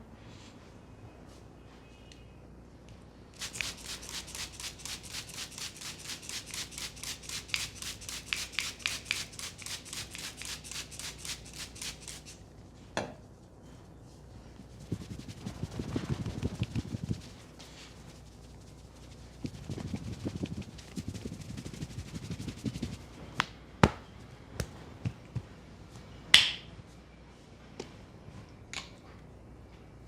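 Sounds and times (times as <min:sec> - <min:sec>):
hands patting a head: 0:03.4 - 0:12.4, 0:14.6 - 0:25.5.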